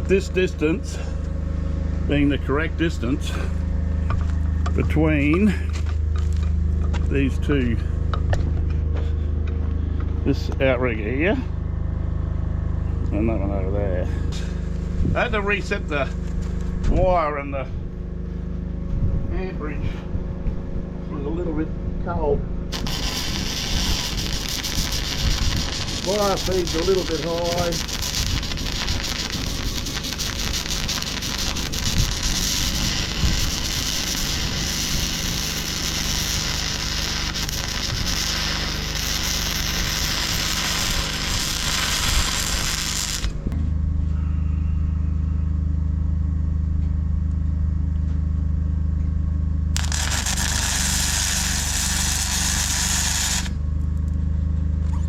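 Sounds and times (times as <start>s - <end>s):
low machine hum: 0.0s - 55.0s
welder arcing crackle: 22.7s - 43.5s, 49.8s - 53.6s.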